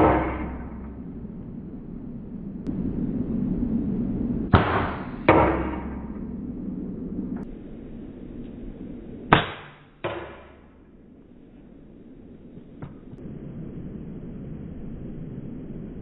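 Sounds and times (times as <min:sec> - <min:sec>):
air rifle shot crack: 0:00.0 - 0:01.9, 0:04.5 - 0:07.6, 0:09.2 - 0:11.0.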